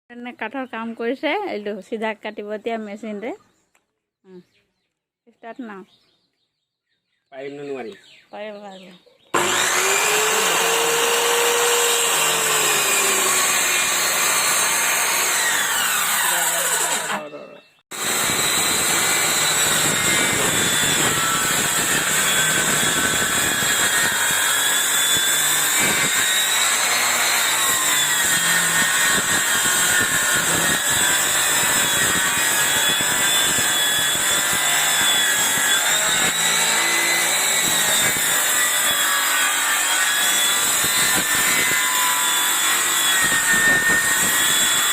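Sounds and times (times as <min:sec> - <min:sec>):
power saw cutting wood: 0:09.4 - 0:44.9.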